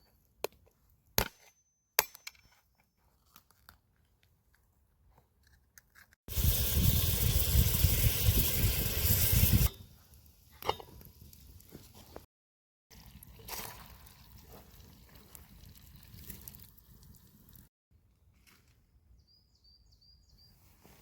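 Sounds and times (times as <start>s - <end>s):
liquid pouring into a pot: 12.9s - 17.6s.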